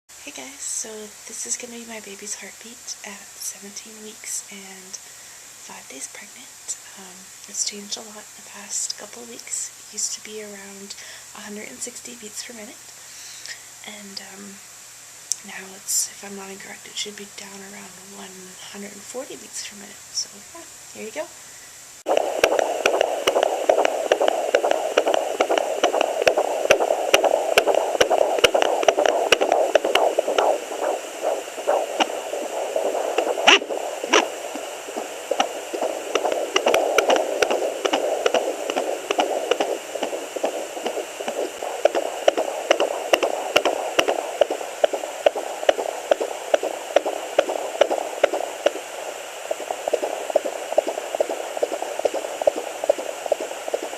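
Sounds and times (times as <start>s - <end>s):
static hiss: 0.0s - 53.9s
fetal heartbeat on doppler: 22.1s - 53.9s.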